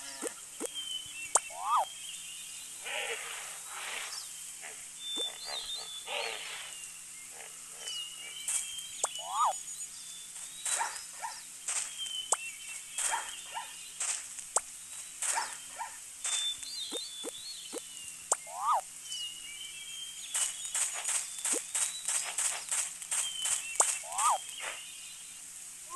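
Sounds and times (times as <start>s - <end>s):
rough noisy animal calls: 0.0s - 0.8s
animal chirps and whistles: 0.0s - 1.9s, 8.5s - 9.6s, 18.3s - 18.8s, 23.2s - 24.8s.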